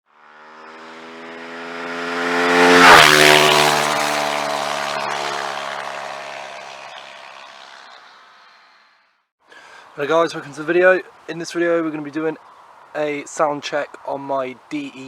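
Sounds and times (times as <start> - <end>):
motorcycle engine passing by: 0.1 - 9.1.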